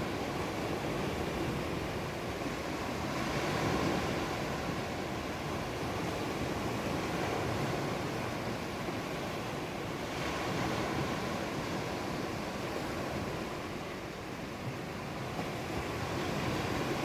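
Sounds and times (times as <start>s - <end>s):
wind: 0.0s - 17.0s.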